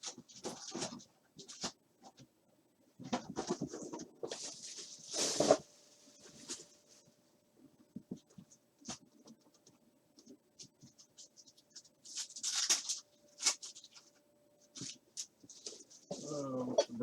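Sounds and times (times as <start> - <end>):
packaging rustle: 11.7 - 16.2
packaging clicks and scratches: 12.0 - 14.1.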